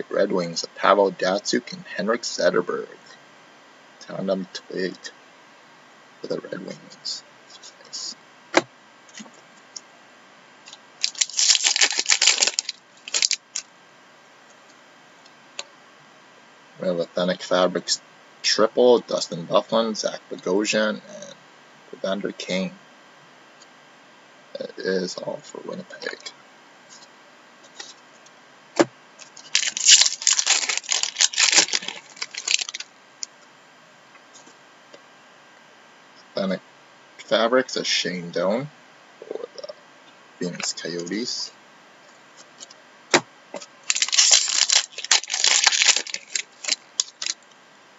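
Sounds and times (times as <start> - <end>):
cards flicking and rustling: 10.7 - 13.6
wrapper crinkling and tearing: 10.7 - 13.7, 29.2 - 32.9, 43.8 - 47.4.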